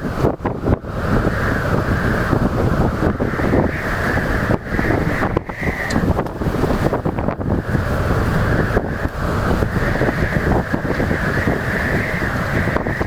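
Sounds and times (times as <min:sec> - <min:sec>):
surf from rough sea: 0:00.0 - 0:13.0
wind buffeting microphone: 0:00.0 - 0:13.0.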